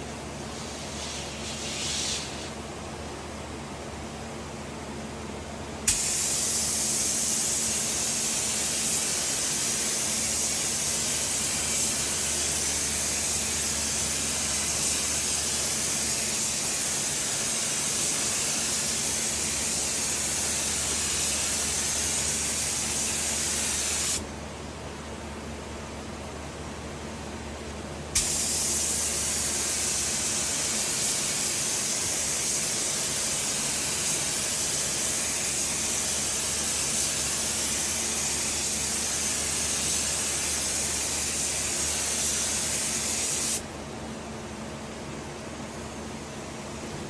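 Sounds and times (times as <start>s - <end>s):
ventilation fans humming: 0.0s - 47.0s
paint spray gun hissing: 0.4s - 2.6s, 5.9s - 24.2s, 28.2s - 43.6s.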